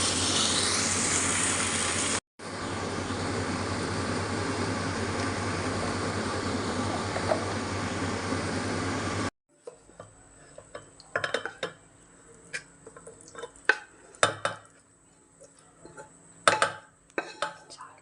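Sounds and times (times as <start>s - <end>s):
spoon clinking on metal dishes: 9.6s - 11.9s.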